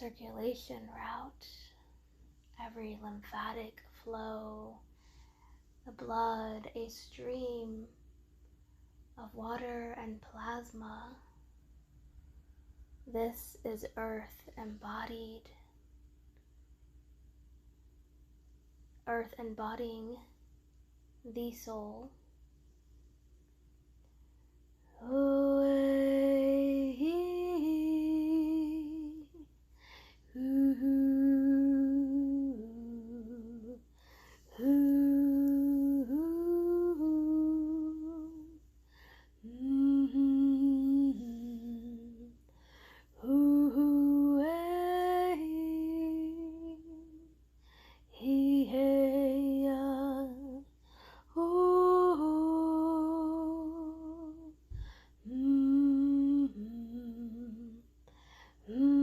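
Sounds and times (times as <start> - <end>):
woman humming a slow chant: 24.8 - 29.5, 30.3 - 33.8, 34.4 - 38.7, 39.4 - 42.4, 43.2 - 47.3, 48.1 - 50.7, 51.3 - 58.0, 58.6 - 59.0.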